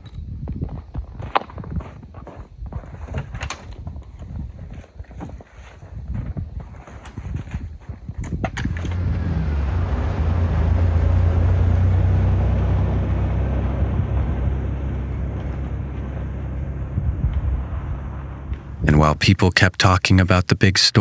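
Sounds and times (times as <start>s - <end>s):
vehicle engine passing by: 8.7s - 18.9s.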